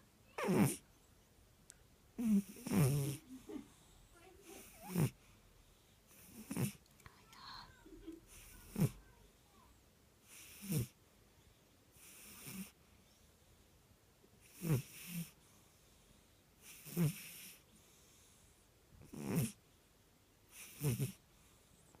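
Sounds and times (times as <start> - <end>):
cat snoring: 0.3 - 0.8, 2.2 - 5.2, 6.1 - 6.8, 8.3 - 9.0, 10.2 - 11.0, 12.0 - 12.8, 14.4 - 15.4, 16.6 - 18.4, 19.0 - 19.6, 20.5 - 21.2.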